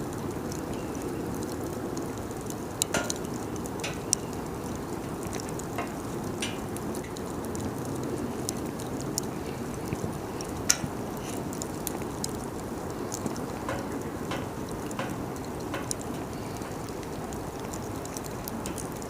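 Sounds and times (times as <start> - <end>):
bonfire crackling and popping: 0.0 - 19.0
low rush of flames: 0.0 - 19.0.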